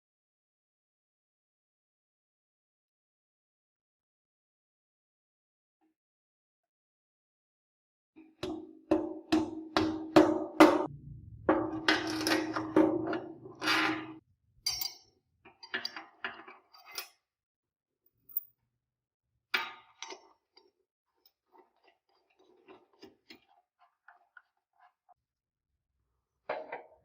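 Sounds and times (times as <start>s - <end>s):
tools clicking and clinking: 14.7s - 17.2s.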